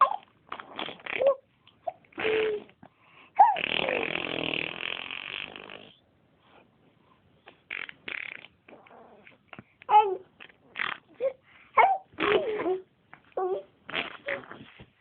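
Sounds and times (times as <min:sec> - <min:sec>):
baby making raspy throaty noises: 0:00.0 - 0:02.8, 0:03.4 - 0:04.8, 0:07.5 - 0:12.8, 0:13.4 - 0:14.8.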